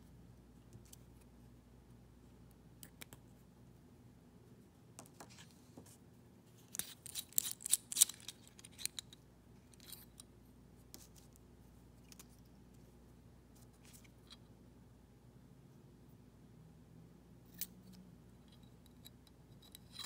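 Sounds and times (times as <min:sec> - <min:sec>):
metal pen parts clicking: 0:06.7 - 0:10.3.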